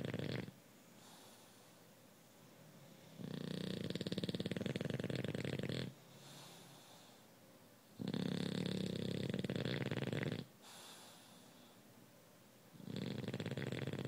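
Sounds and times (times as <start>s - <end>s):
dog snoring: 0.0s - 1.6s, 3.1s - 6.7s, 7.9s - 11.4s, 12.7s - 14.0s
dog breathing: 3.1s - 7.3s, 8.0s - 11.8s.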